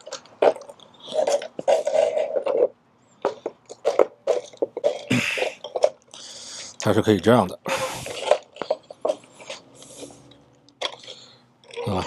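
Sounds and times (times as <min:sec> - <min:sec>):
scraping rub: 0:00.4 - 0:06.0.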